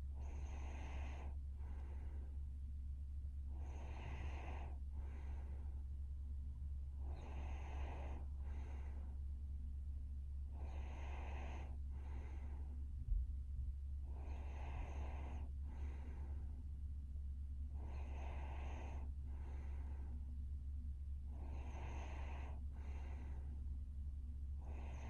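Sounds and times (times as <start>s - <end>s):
steady low hum: 0.0s - 25.0s
woman snoring: 21.4s - 23.2s.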